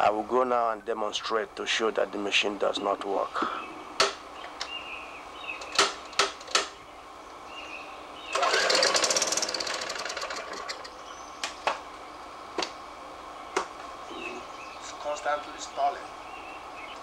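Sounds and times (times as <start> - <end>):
sharp clicks or knocks: 4.0 - 4.7, 5.6 - 6.8
lawn mower engine starting: 8.3 - 11.0.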